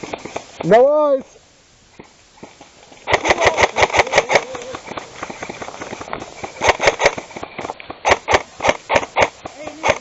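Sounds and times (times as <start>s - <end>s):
airsoft gun firing rapid shots: 3.0s - 10.0s.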